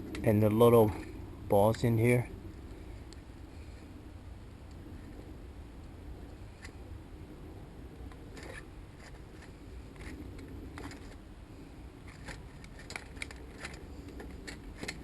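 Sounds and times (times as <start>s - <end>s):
metallic clicks and scrapes: 8.1s - 11.2s, 12.0s - 15.0s.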